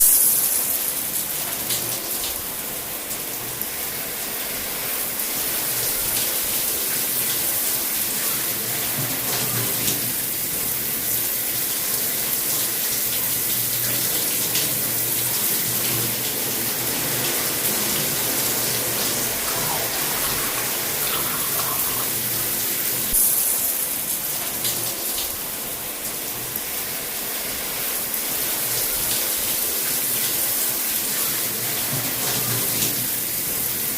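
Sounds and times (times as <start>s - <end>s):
shower water spraying: 0.0s - 2.5s, 5.3s - 33.9s.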